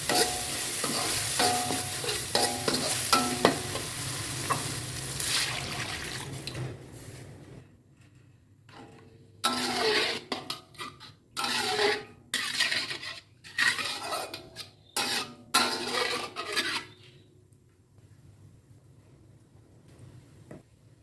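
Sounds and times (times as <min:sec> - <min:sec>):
utensil scraping cookware: 0:00.0 - 0:04.7, 0:08.7 - 0:17.3.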